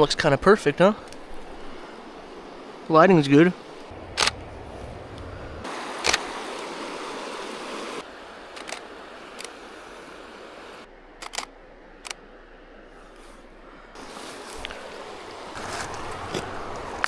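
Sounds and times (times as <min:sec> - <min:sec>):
steady rushing background: 0:00.0 - 0:14.2
camera shutter clicking: 0:04.2 - 0:04.4, 0:06.0 - 0:06.2, 0:08.6 - 0:09.6, 0:11.2 - 0:12.2.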